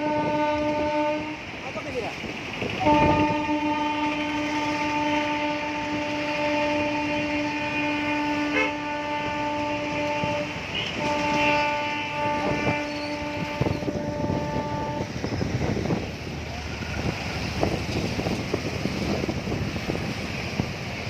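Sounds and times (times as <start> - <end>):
long horn blasts: 0.0 - 1.5, 2.8 - 16.1.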